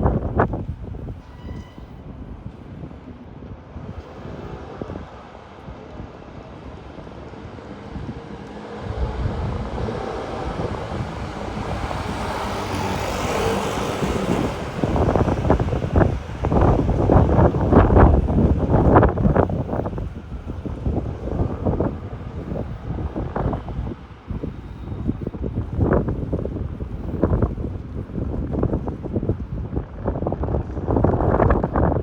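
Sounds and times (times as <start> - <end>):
wind buffeting microphone: 0.0 - 32.0.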